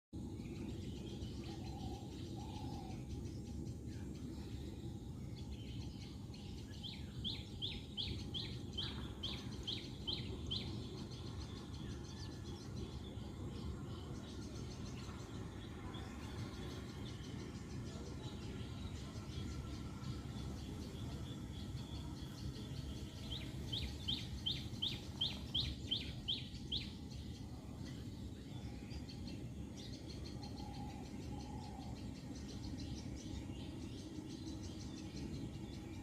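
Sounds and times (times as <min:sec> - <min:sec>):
birds chirping: 0:00.2 - 0:36.0
low steady rumble: 0:00.2 - 0:36.0.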